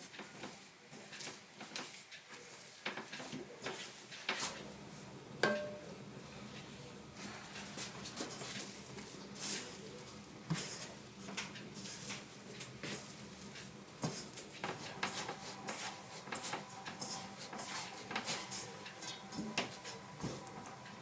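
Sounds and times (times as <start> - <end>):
food preparation clicks and taps: 5.4 - 6.7, 10.4 - 21.0.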